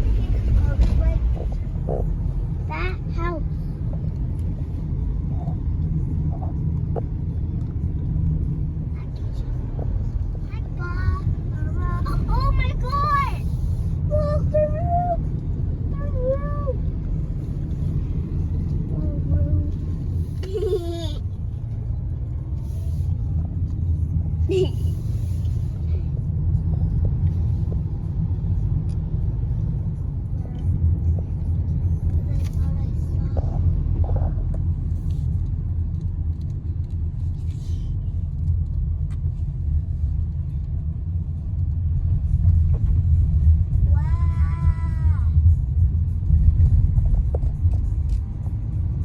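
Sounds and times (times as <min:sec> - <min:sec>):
car driving rumble: 0:00.0 - 0:49.0.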